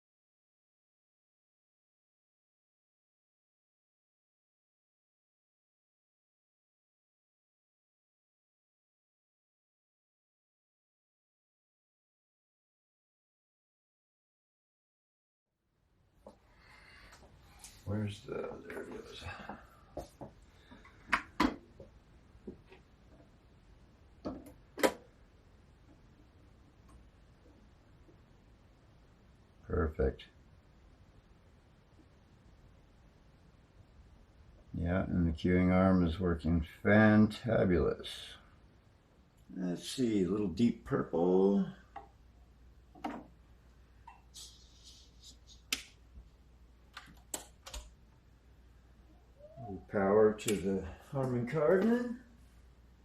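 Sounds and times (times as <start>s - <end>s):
vinyl record rustle: 17.2s - 23.4s, 49.9s - 52.7s
sharp clicks: 46.9s - 47.9s.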